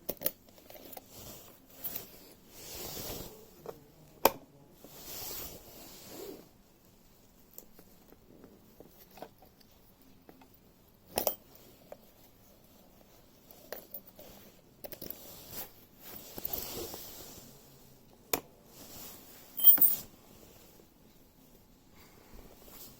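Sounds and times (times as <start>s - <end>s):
rustling: 0.5s - 4.0s, 11.5s - 17.9s, 18.6s - 22.9s.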